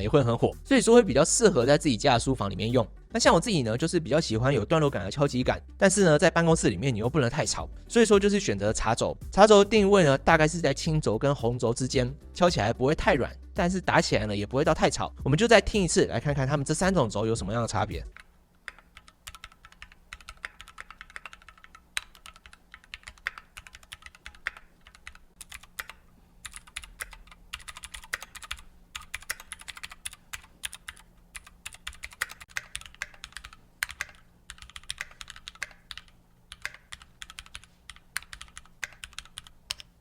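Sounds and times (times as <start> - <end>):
mechanical keyboard typing: 18.1 - 39.9.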